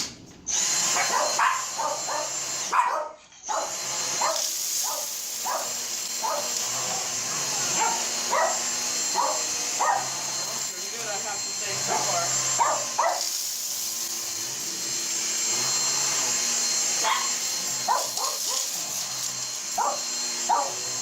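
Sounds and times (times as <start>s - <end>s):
vacuum cleaner whining on carpet: 0.0s - 21.0s
dog barking: 1.0s - 6.6s, 7.6s - 10.2s, 11.9s - 13.3s, 17.0s - 18.7s, 19.8s - 20.8s.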